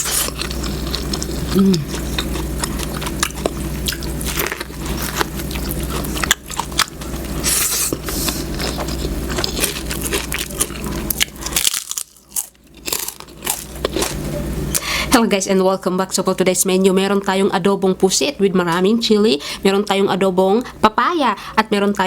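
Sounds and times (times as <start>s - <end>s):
biting and chewing: 0.0s - 14.3s.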